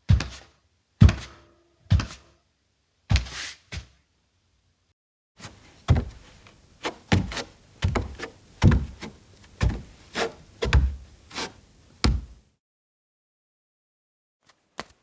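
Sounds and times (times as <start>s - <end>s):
barefoot footsteps: 0.1s - 2.3s, 5.4s - 12.4s.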